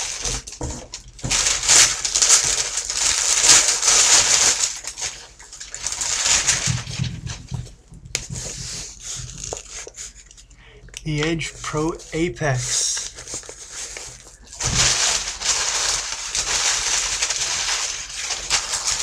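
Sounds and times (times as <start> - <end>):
paper rustling and crinkling: 0.0 - 10.5, 11.2 - 19.0.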